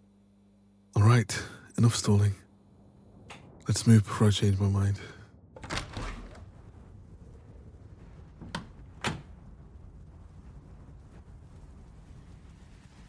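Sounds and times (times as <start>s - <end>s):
door scrape: 5.6s - 6.4s.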